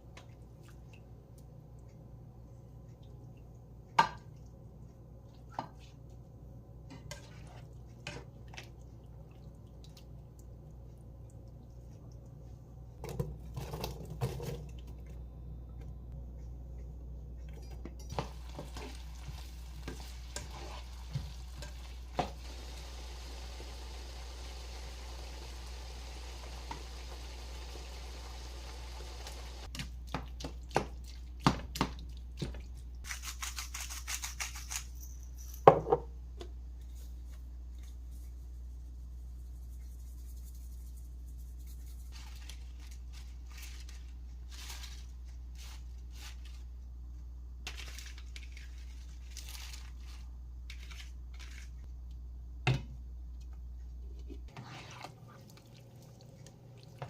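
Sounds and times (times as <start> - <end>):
food sizzling in a pan: 18.1 - 29.7.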